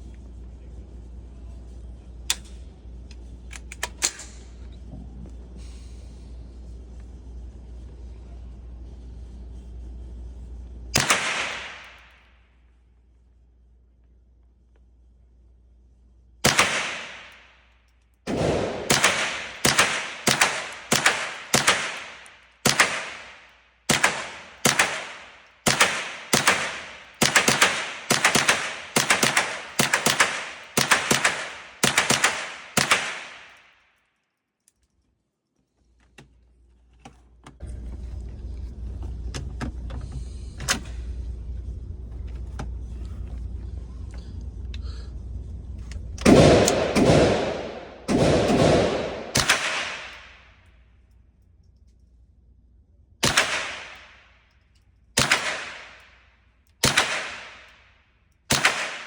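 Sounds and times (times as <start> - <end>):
gunshots with echo: 11.0 - 12.1, 16.4 - 17.4, 18.3 - 33.6, 46.2 - 50.5, 53.2 - 54.2, 55.2 - 56.0, 56.8 - 57.7, 58.5 - 59.0
low rumble: 18.2 - 32.2, 37.6 - 55.1.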